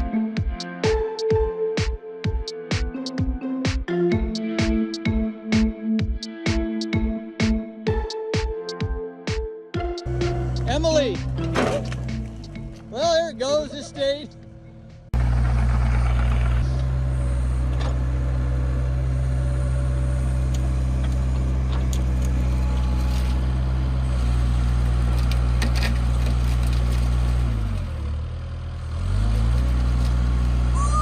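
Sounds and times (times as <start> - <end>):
excavator diesel engine running: 10.1 - 31.0.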